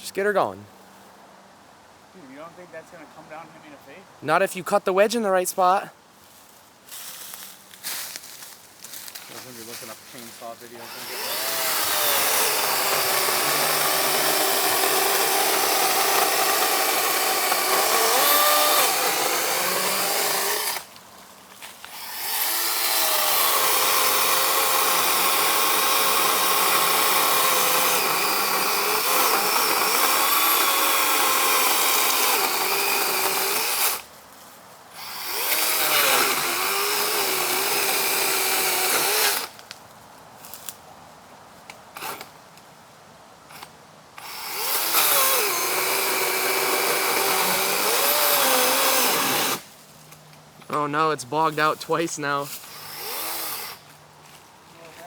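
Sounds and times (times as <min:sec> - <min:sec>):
person speaking: 0:00.0 - 0:00.7, 0:02.2 - 0:06.0, 0:50.7 - 0:52.6
electric chainsaw cutting wood: 0:10.8 - 0:20.9, 0:21.9 - 0:34.1, 0:35.0 - 0:39.6, 0:43.5 - 0:49.7, 0:50.7 - 0:53.9.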